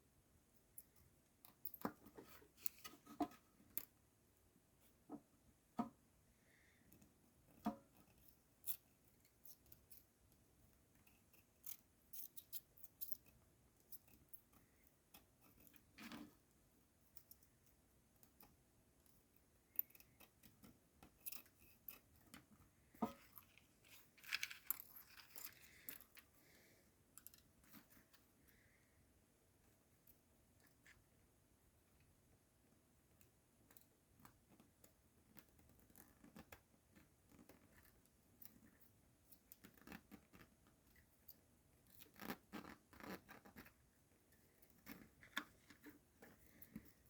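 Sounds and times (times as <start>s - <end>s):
small tools clicking and tapping: 18.2s - 26.3s.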